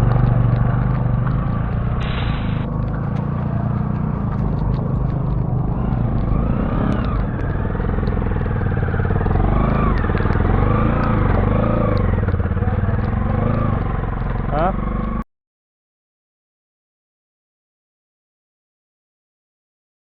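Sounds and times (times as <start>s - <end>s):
motorcycle engine running: 0.0s - 15.2s.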